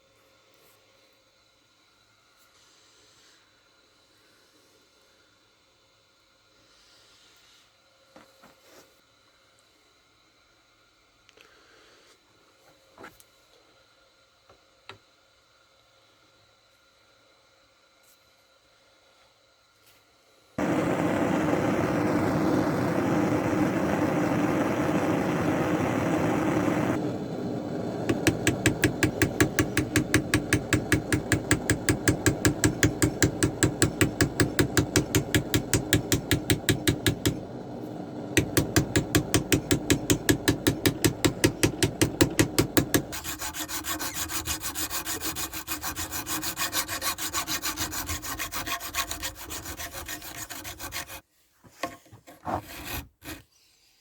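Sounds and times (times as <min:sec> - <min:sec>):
steady rushing noise: 0:20.6 - 0:43.2
wood worked with rapid strokes: 0:20.6 - 0:51.2.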